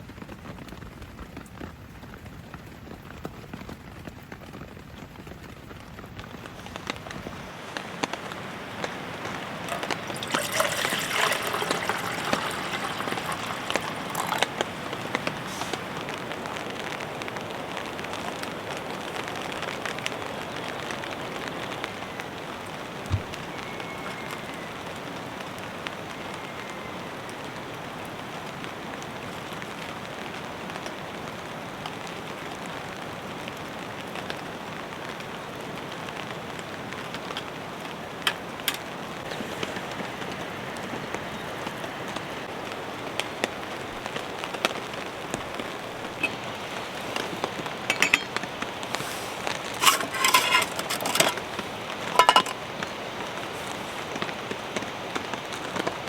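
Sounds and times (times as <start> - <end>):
rain falling on a tent: 0.0 - 56.0.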